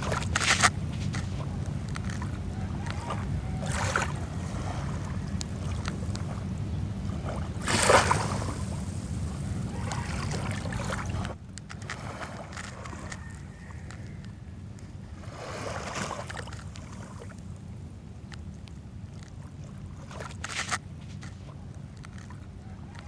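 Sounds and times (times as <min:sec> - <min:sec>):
steady low rumble: 0:00.0 - 0:15.4, 0:16.0 - 0:23.0
sea waves washing on shore: 0:00.0 - 0:17.6.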